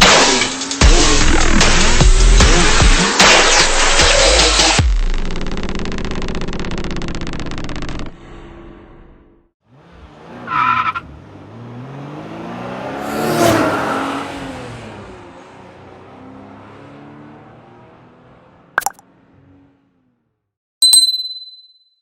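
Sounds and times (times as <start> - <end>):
car engine passing by: 9.7 - 20.2.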